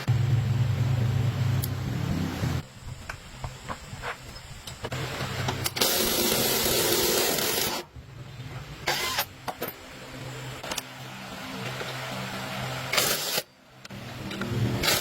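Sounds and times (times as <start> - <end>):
low machine hum: 0.0 - 3.0.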